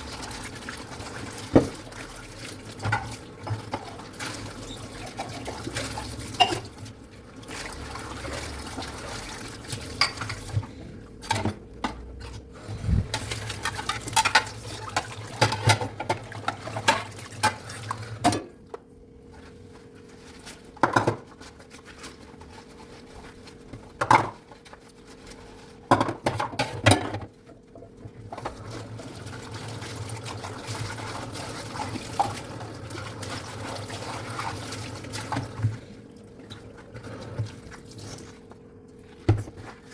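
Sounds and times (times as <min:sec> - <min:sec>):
dishes and cutlery clinking: 0:06.4 - 0:06.7.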